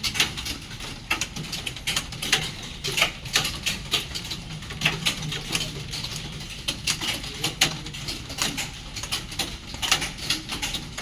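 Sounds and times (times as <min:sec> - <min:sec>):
computer keyboards clicking: 0:00.0 - 0:11.0.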